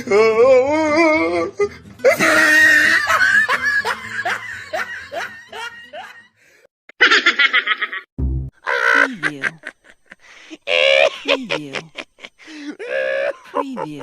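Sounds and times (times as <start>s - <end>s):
person laughing: 2.1s - 6.2s, 7.0s - 8.1s, 8.7s - 14.0s.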